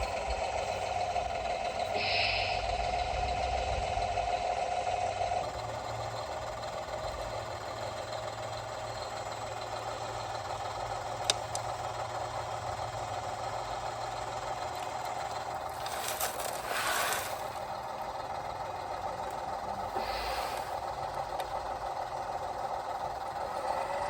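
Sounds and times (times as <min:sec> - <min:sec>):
model machinery humming: 0:00.0 - 0:24.0
brief scraping rush: 0:15.8 - 0:17.5.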